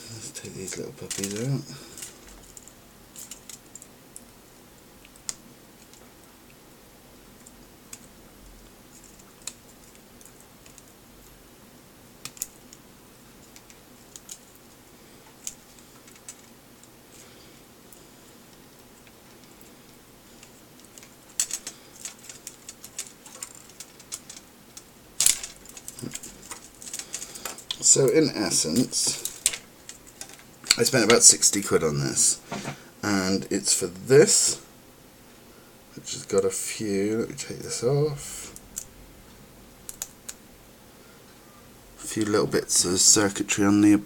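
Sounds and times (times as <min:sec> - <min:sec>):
plastic parts clicking and tapping: 0:01.0 - 0:04.3, 0:20.4 - 0:27.8.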